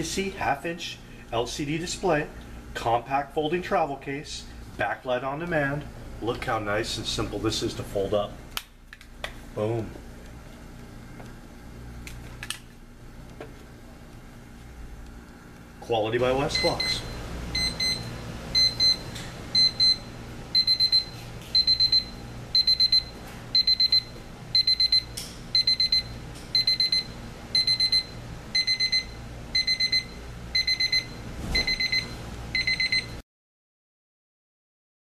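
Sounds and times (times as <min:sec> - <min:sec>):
alarm clock beeping: 0:16.6 - 0:19.0, 0:19.6 - 0:33.2.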